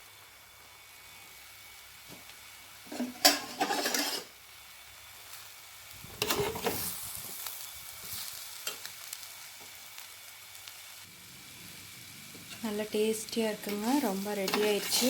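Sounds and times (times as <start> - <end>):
faint sizzle: 0.0 - 15.0
spatula scraping a pan: 2.9 - 4.3, 6.2 - 6.9, 13.6 - 15.0.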